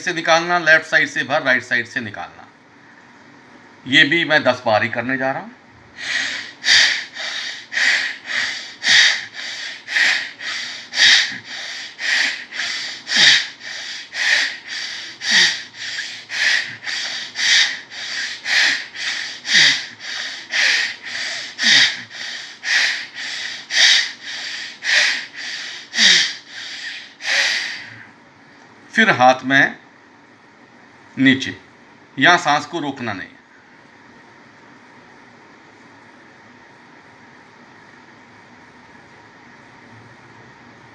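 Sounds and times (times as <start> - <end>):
rapid forceful nasal breathing: 6.0 - 28.1.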